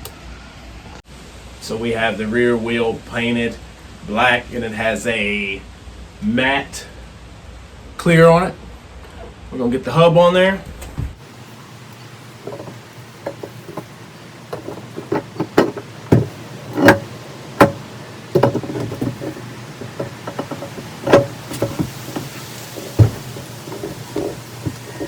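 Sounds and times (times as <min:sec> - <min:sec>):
metal parts knocking and clinking: 0:12.4 - 0:25.0.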